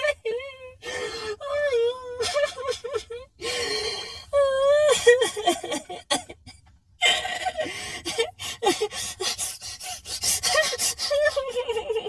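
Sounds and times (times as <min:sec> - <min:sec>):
girl sobbing: 0:00.0 - 0:12.0.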